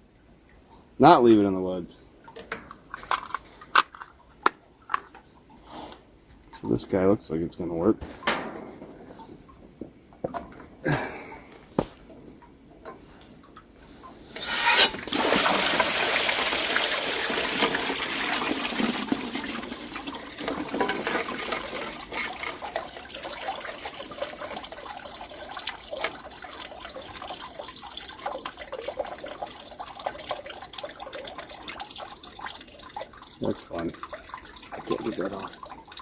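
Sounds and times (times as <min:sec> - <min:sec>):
liquid gushing and trickling: 0:14.2 - 0:36.0.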